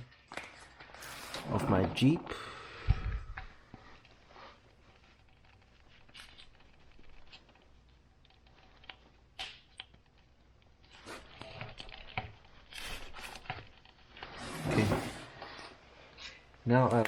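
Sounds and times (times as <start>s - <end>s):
clicks and rustles of wiring: 2.9s - 14.4s.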